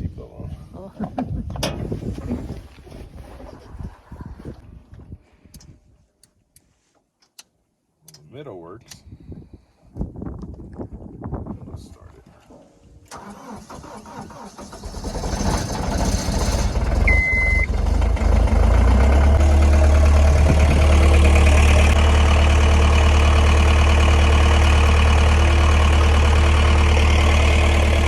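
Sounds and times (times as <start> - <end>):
diesel engine cranking and idling: 13.1 - 28.0
short beep: 17.1 - 17.7.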